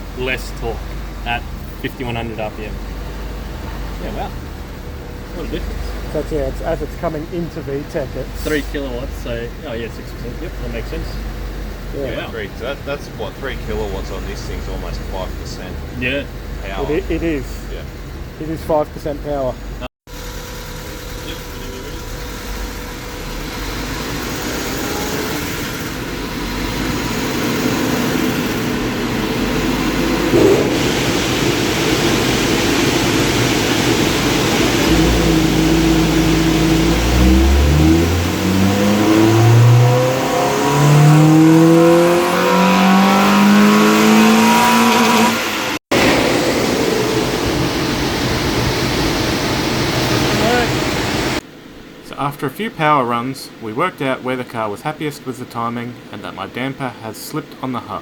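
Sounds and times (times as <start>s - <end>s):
engine full-throttle power run: 0.0s - 51.6s.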